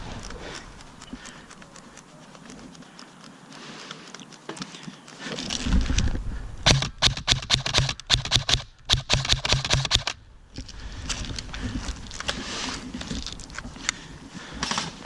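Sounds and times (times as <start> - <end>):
rapid airsoft gunfire: 6.6 - 10.2
rustling handling noise: 10.6 - 15.0.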